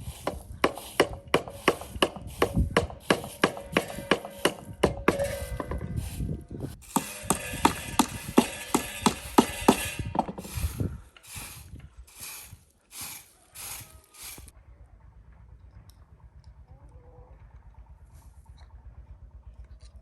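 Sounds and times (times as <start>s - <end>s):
short scraping strokes: 0.0s - 14.5s.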